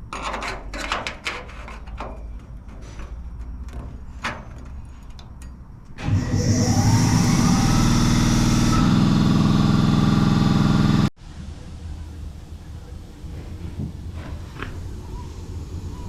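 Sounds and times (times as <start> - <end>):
motor spinning up: 6.0 - 11.1.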